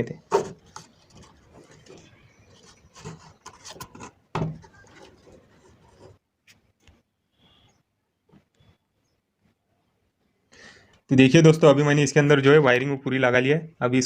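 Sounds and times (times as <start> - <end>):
wiring connectors rubbing and clicking: 0.2 - 7.0.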